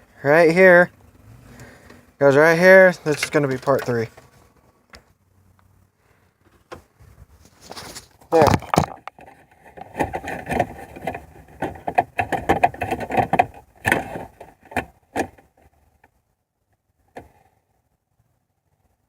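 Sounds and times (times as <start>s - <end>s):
tools knocking and clattering: 3.1s - 4.0s, 8.4s - 15.3s.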